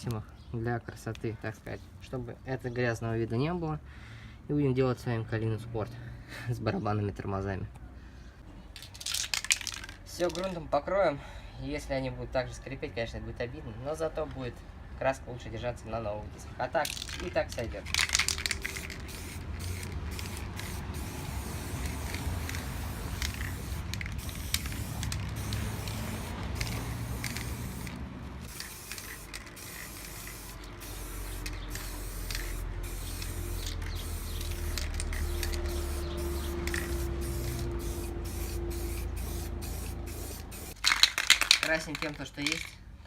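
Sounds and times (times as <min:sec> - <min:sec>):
spray can hissing: 0:17.9 - 0:41.5.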